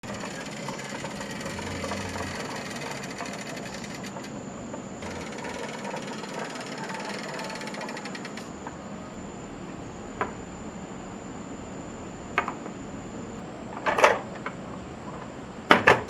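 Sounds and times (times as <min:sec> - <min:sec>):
marbles rattling down wooden run: 0:00.0 - 0:04.4, 0:05.0 - 0:08.5.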